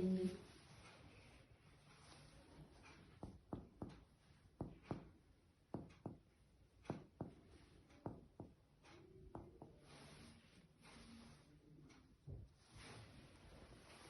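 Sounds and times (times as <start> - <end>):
soft rustle: 0.0 - 3.2, 9.7 - 14.0
finger tapping on chest: 3.2 - 7.4, 8.0 - 8.6.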